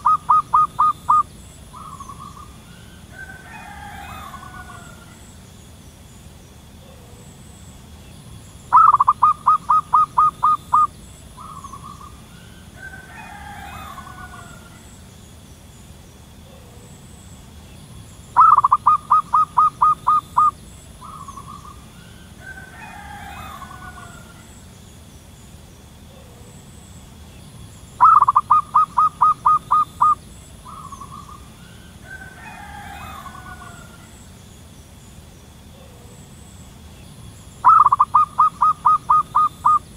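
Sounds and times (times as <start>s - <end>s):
dove staccato cooing: 0.0s - 5.4s, 8.7s - 14.9s, 18.3s - 24.5s, 27.9s - 34.2s, 37.6s - 39.9s.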